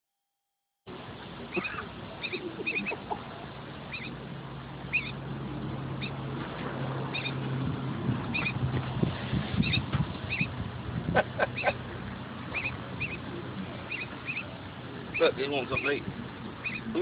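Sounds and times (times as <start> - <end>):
low steady hum: 0.9 - 17.0
fledgling begging chirps: 1.4 - 6.4, 7.0 - 7.4, 8.2 - 8.6, 9.6 - 10.6, 11.4 - 17.0.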